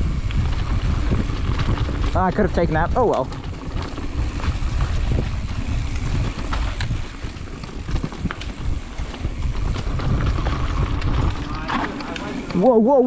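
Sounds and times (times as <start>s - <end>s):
bike rattling clicks and knocks: 0.0s - 13.0s
tyres rumbling on dirt: 0.0s - 13.0s
wind buffeting microphone: 0.0s - 13.0s.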